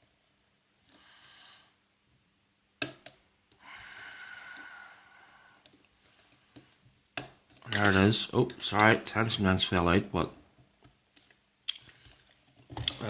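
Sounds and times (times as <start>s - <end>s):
close-up breathing: 0.8s - 1.9s, 3.5s - 7.0s, 11.8s - 12.5s
lock picking: 7.2s - 8.1s.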